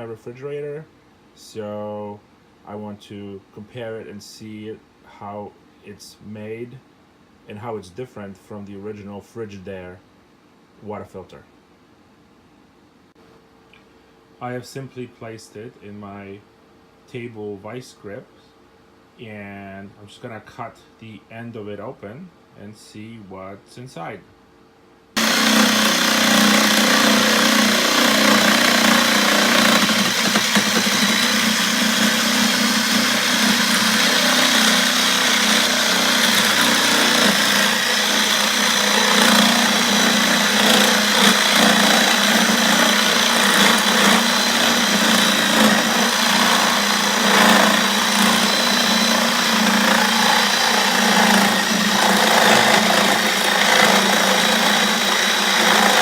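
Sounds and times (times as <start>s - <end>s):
power tool cutting plastic: 25.2s - 56.0s.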